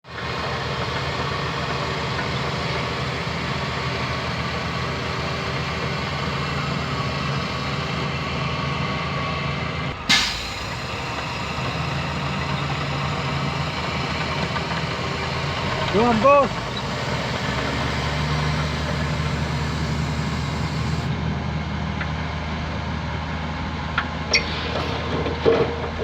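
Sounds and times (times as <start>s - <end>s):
diesel engine running: 0.0s - 26.0s
sharp hiss of air: 10.1s - 11.3s.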